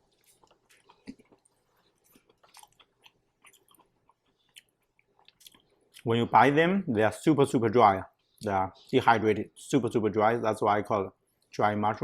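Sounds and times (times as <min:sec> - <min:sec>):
chewing food: 0:00.0 - 0:06.1.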